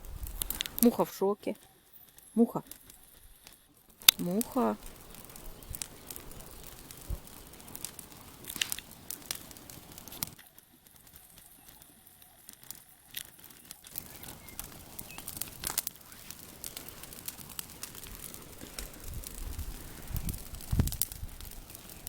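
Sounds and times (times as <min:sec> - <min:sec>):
bonfire crackling and popping: 0:00.0 - 0:22.0.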